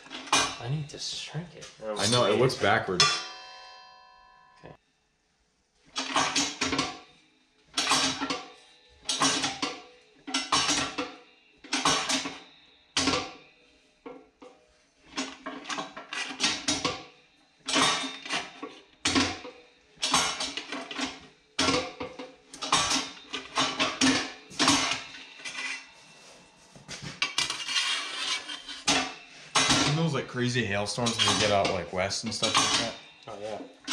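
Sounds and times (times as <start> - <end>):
machine hammering sheet metal: 9.1 - 11.1, 22.6 - 25.6, 28.8 - 30.2, 31.0 - 31.8.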